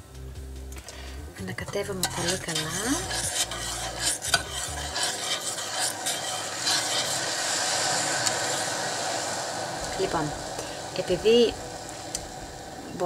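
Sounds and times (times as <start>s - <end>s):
spoon scraping a saucepan: 1.6s - 7.4s.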